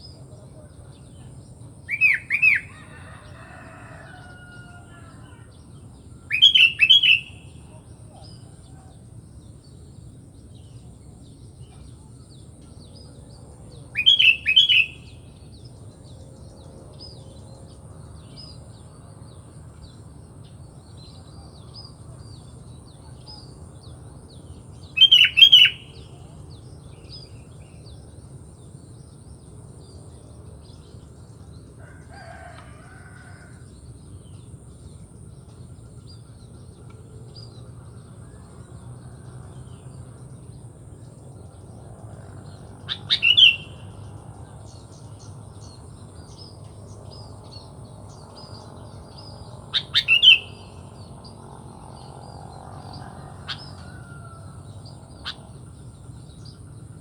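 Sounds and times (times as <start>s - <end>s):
small birds twittering: 0.0s - 57.0s.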